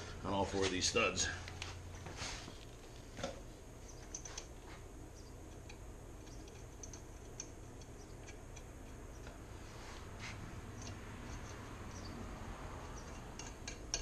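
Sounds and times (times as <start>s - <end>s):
low steady hum: 0.0s - 14.0s
light clicks of lug nuts: 10.3s - 12.1s, 12.8s - 14.0s.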